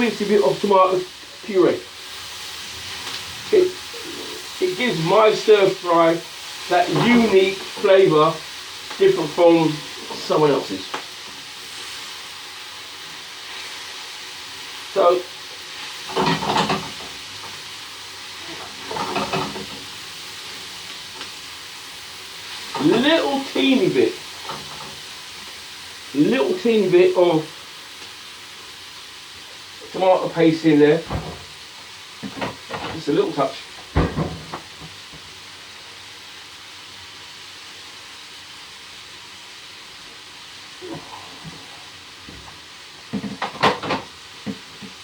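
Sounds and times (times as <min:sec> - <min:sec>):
vegetables sizzling in oil: 0:00.0 - 0:45.0.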